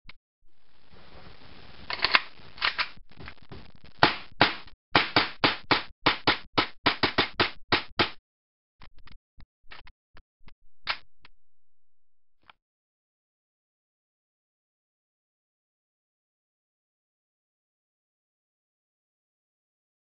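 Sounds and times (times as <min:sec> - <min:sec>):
airsoft pistol firing: 0:04.0 - 0:08.2.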